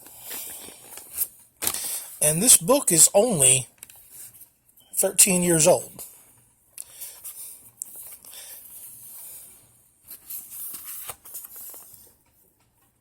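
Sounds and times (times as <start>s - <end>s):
paper pages rustling: 10.1s - 12.4s.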